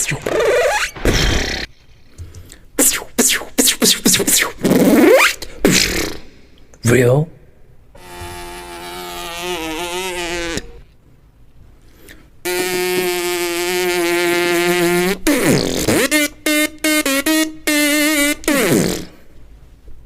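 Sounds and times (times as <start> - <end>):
long held pitched tone: 12.5 - 15.2.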